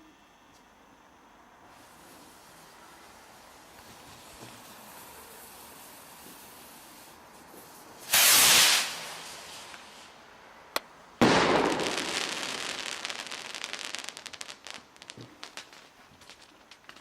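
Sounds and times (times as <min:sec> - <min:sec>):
firework hiss: 0:01.7 - 0:10.3, 0:11.2 - 0:17.0
firework crackling: 0:01.7 - 0:17.0
firework bang: 0:08.0 - 0:10.0, 0:11.2 - 0:17.0.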